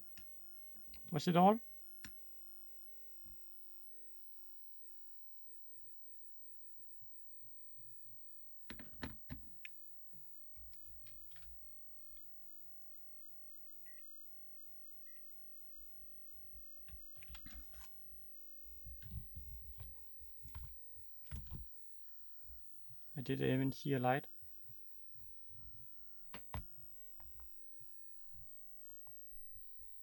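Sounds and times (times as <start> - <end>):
short faint beeps: 13.8 - 14.2, 15.0 - 15.3.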